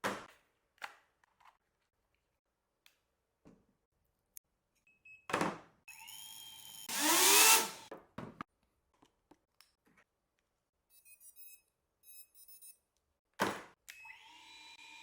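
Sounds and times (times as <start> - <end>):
drone motors whining: 6.9 - 7.9.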